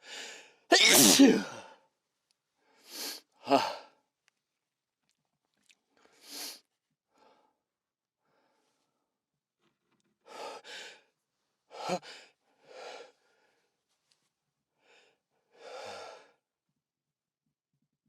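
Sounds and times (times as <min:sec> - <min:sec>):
person sneezing: 0:00.7 - 0:01.6
person breathing heavily: 0:10.3 - 0:11.1, 0:11.7 - 0:13.6, 0:14.8 - 0:16.4.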